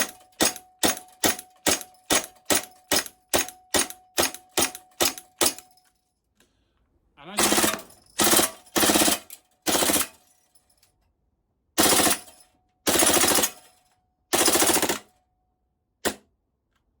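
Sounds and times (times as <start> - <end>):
airsoft pistol firing bursts: 7.4 - 10.0, 12.9 - 13.6, 14.4 - 15.1.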